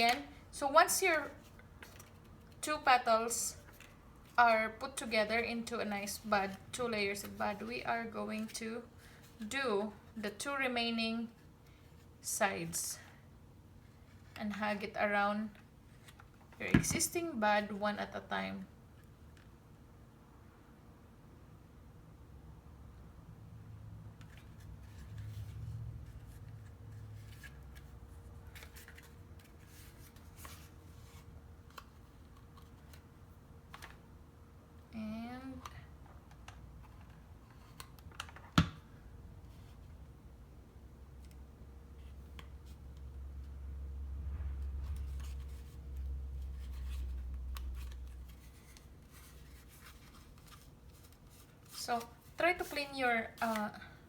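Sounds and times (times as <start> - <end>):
paper rustling and crinkling: 24.3 - 33.0, 44.8 - 53.7.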